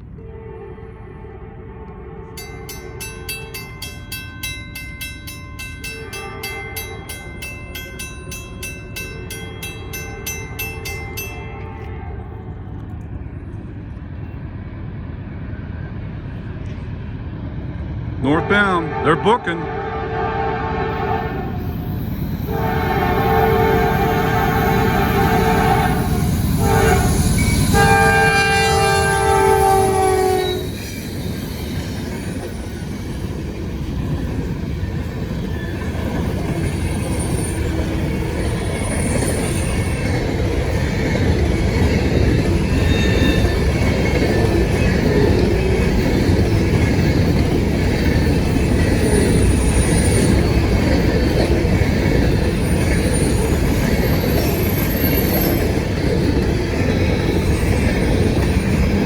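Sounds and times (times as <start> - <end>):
train cars rumbling past: 0.0 - 59.0
locomotive horn: 0.2 - 2.7, 11.5 - 12.6, 18.2 - 21.6, 22.5 - 30.7
faint wheel squeals: 42.6 - 43.8.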